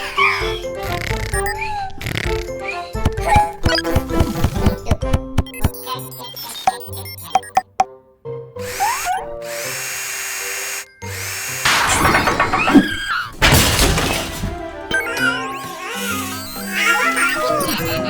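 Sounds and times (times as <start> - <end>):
cartoon soundtrack music: 0.0 - 10.1, 11.1 - 18.0
crash: 11.7 - 15.6
clattering sound effects: 11.7 - 16.8.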